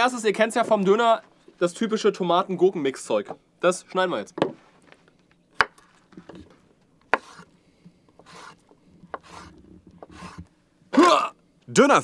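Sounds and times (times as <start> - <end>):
knife slicing and scraping: 7.1 - 7.5, 8.2 - 10.5.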